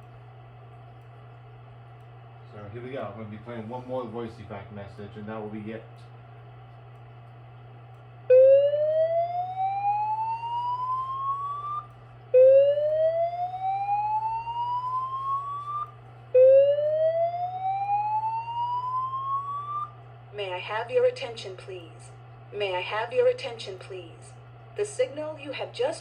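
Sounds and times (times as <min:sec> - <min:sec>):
faint low hum: 0:00.0 - 0:26.0
fire alarm whoop tone: 0:08.3 - 0:20.0.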